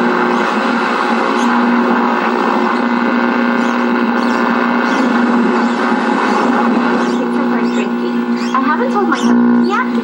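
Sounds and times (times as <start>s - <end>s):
television broadcast sound: 0.0s - 10.0s
television speaker buzz: 0.0s - 10.0s.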